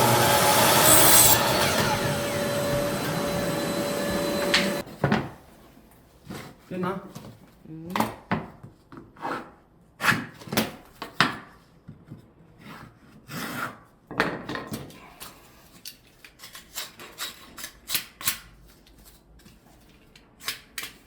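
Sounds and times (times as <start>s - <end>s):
wood scraping on wood: 0.0s - 4.8s.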